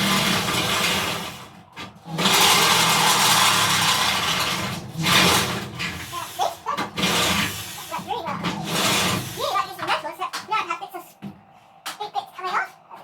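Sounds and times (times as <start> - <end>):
electric drill boring through steel: 0.0 - 9.4.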